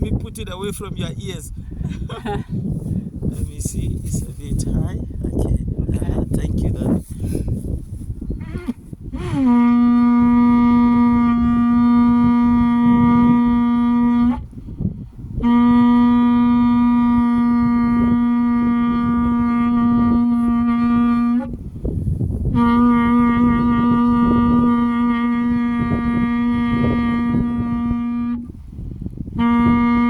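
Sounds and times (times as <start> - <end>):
ram's horn blasts: 8.4 - 14.5, 15.4 - 28.6, 29.3 - 30.0.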